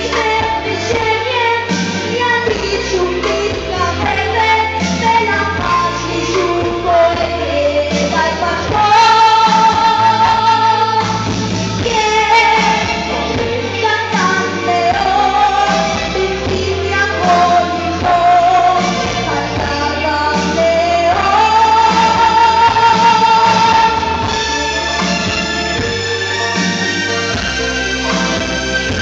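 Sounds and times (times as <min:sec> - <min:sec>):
bass line: 0:00.0 - 0:29.0
pop song with singing: 0:00.0 - 0:29.0.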